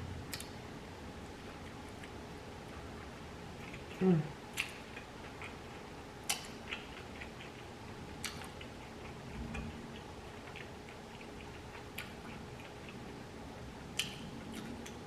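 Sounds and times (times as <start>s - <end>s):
wet mouth clicks and smacks: 0.3s - 0.6s, 3.6s - 5.6s, 6.2s - 7.6s, 8.2s - 9.7s, 10.4s - 13.0s, 13.9s - 15.0s
close chewing: 1.3s - 15.0s.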